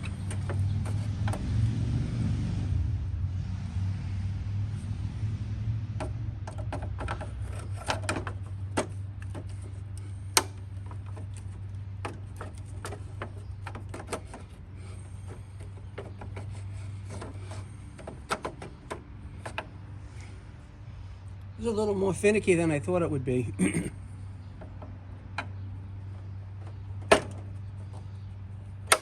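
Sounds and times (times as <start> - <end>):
steady low hum: 0.0 - 29.0
clicks and knocks of tools: 6.0 - 14.6.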